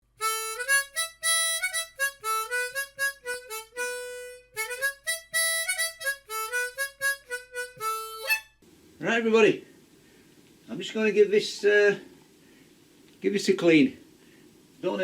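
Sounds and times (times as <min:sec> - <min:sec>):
solo harmonica melody: 0:00.0 - 0:08.6.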